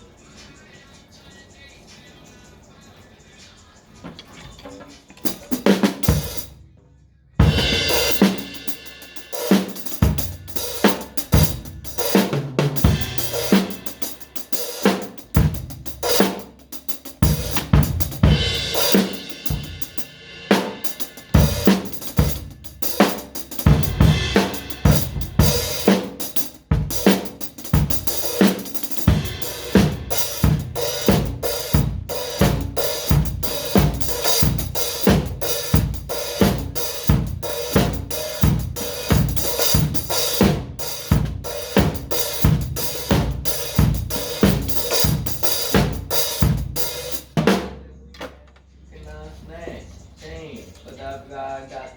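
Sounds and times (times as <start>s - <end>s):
drum kit playing: 4.9s - 6.8s, 7.4s - 47.9s.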